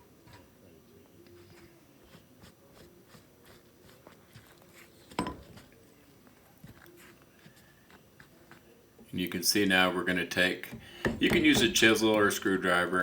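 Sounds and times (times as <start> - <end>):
tools and wood clicking: 10.6 - 12.2
sharp knock: 10.7 - 12.0.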